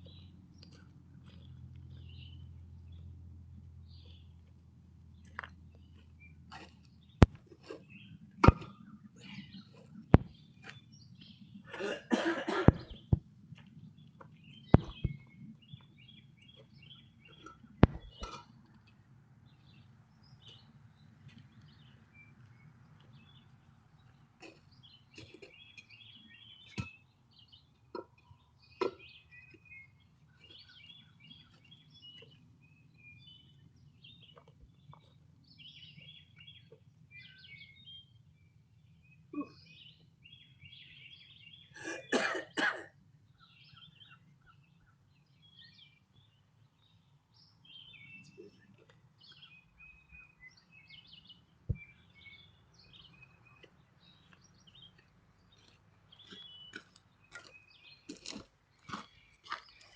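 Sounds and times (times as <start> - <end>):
birds chirping and singing: 0.0 - 3.1, 5.1 - 59.9
sharp knocks: 14.7 - 15.2, 17.8 - 18.4.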